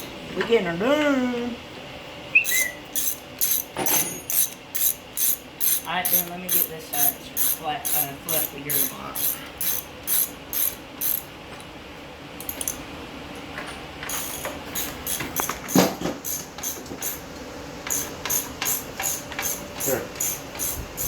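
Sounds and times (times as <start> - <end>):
ratchet wrench clicking: 2.5 - 11.2, 12.4 - 12.8, 14.1 - 15.6, 17.9 - 21.0
metal clank: 3.8 - 4.6.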